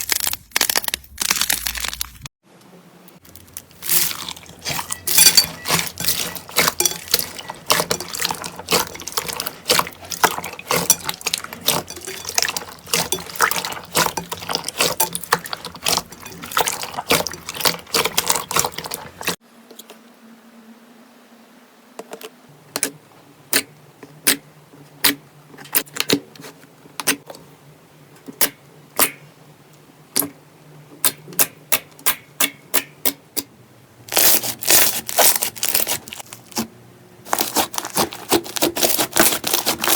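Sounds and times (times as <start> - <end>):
slime squished by hand: 34.1 - 36.7, 37.3 - 39.9.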